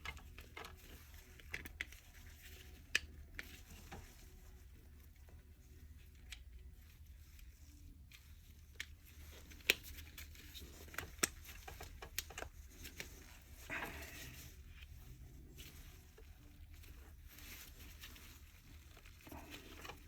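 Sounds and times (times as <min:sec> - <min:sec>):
plastic parts clicking and knocking: 0:08.7 - 0:14.2.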